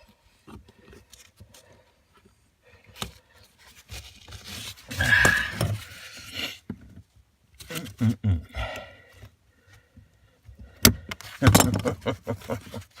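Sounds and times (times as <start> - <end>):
plastic scraping and rustling: 2.9 - 8.0.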